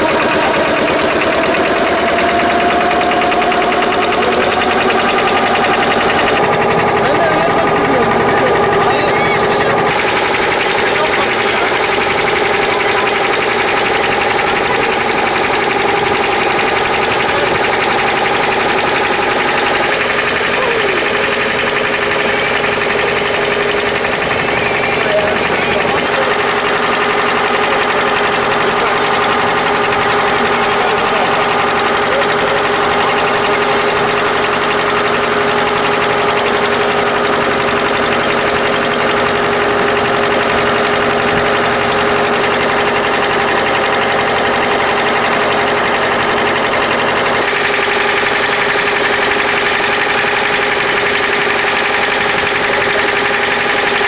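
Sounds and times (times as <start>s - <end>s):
boat engine droning: 0.0s - 54.0s.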